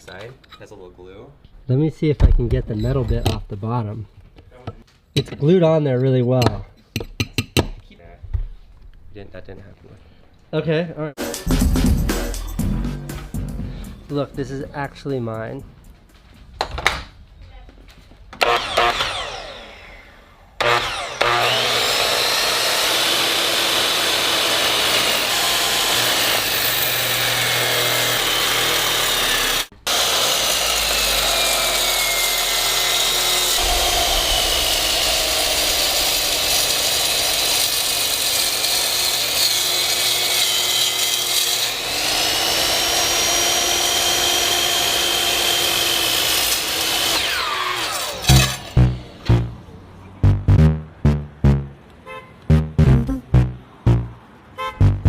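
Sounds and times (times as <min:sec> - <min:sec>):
power cutting tool running: 0:18.4 - 0:49.4.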